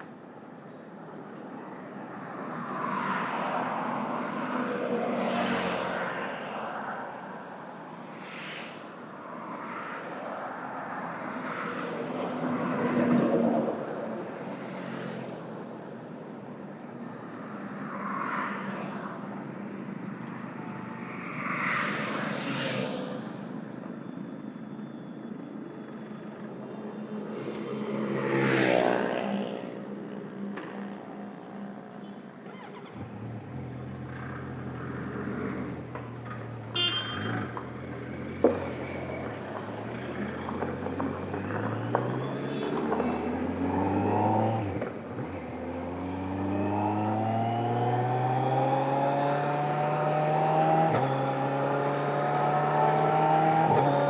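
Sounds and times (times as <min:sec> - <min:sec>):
wind and road noise: 0:00.0 - 0:54.0
motorcycle engine at road speed: 0:28.9 - 0:54.0.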